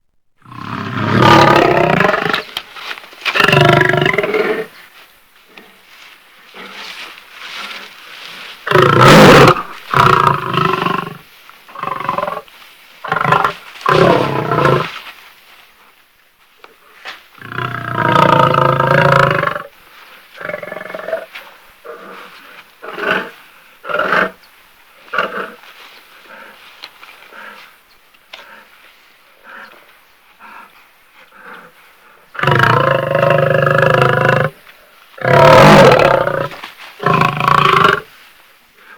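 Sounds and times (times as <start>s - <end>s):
beast growls and roars: 35.2s - 38.1s.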